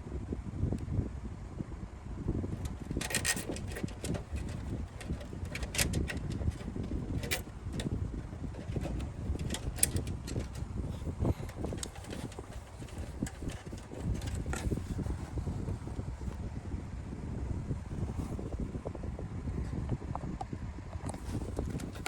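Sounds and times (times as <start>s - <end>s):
cables rubbing: 2.5s - 16.4s, 21.1s - 22.0s
sharp clicks and ticks: 2.6s - 10.6s.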